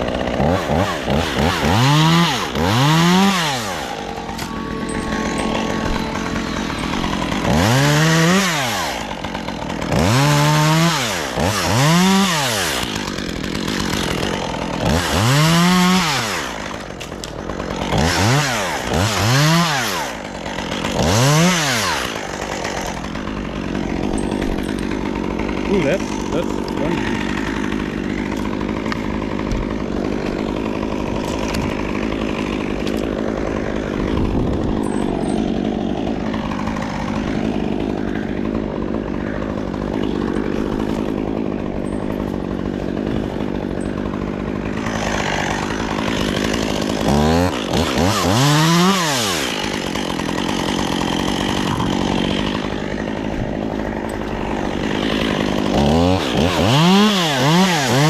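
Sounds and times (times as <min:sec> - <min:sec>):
chainsaw idling and revving: 0:00.0 - 0:58.0.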